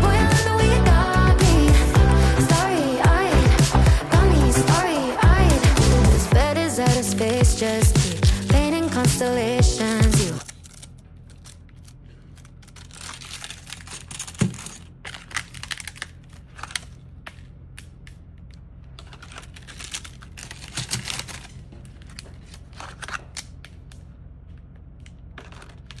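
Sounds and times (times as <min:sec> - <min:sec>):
plastic tray crinkling: 0:09.6 - 0:17.4, 0:18.9 - 0:24.0, 0:25.3 - 0:26.0.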